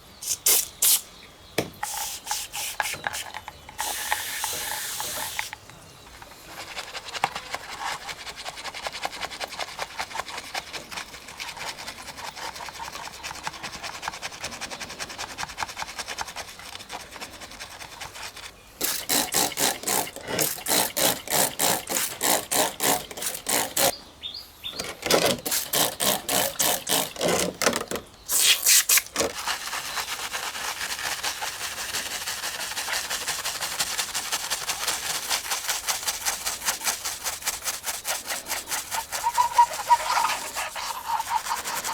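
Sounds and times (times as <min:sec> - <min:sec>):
hand scrubbing model car: 0:06.4 - 0:23.9, 0:25.3 - 0:27.4, 0:28.3 - 0:41.9.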